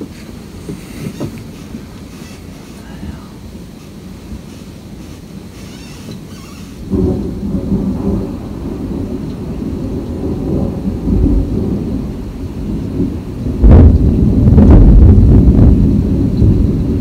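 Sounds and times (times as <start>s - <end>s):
rain falling: 0.0s - 17.0s
thunder rumbling: 6.7s - 17.0s.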